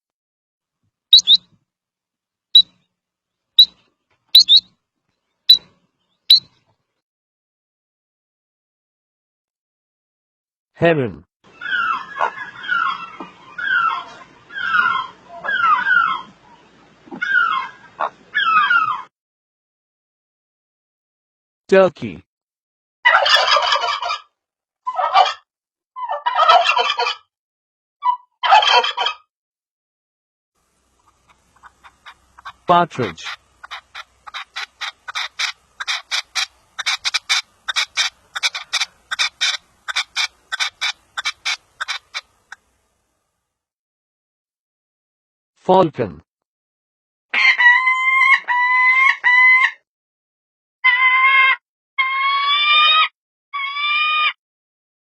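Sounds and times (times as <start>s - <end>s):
heron squawking: 1.1s - 1.4s, 4.4s - 4.7s, 6.3s - 6.5s, 31.0s - 42.6s
partridge calling: 1.1s - 1.4s, 2.6s - 2.8s, 3.6s - 4.7s, 5.4s - 6.6s, 31.0s - 42.6s.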